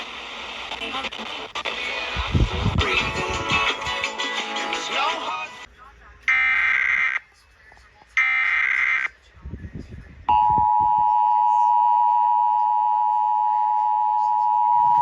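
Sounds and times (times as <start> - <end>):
two-tone alert signal: 10.3 - 15.0.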